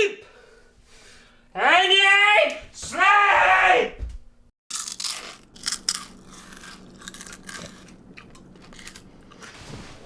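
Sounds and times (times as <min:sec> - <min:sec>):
crunching and crinkling: 0:04.7 - 0:10.0.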